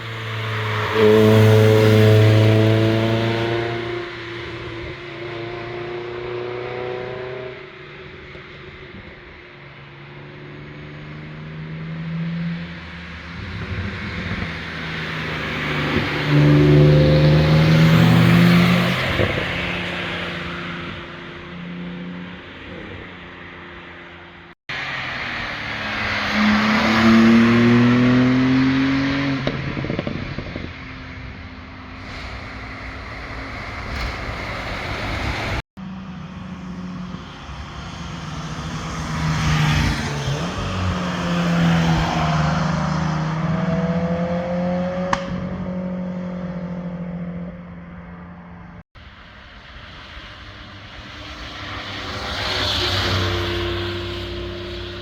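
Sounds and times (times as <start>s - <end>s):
cars revving past: 0.0s - 9.4s, 10.2s - 48.7s, 49.8s - 55.0s.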